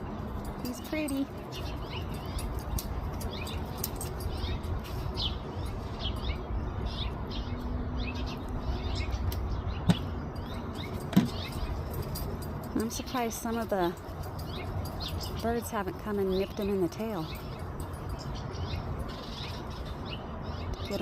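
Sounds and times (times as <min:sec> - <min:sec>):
songbirds chirping: 0:00.0 - 0:21.0.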